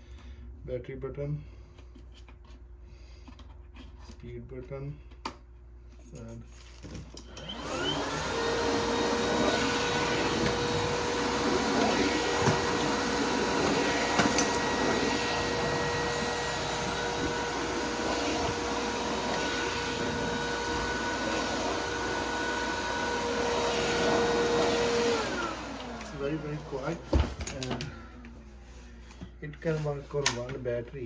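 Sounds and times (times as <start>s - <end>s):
vacuum cleaner running: 7.2s - 29.2s.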